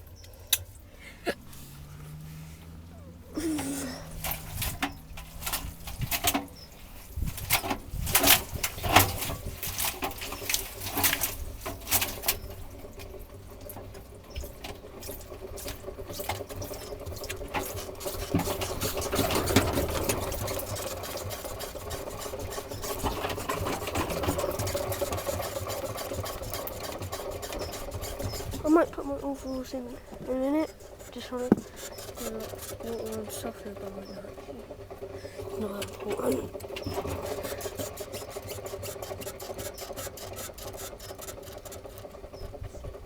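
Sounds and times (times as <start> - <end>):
small motor humming: 0.0 - 10.8, 15.2 - 43.0
sharp clicks and knocks: 3.6 - 43.0.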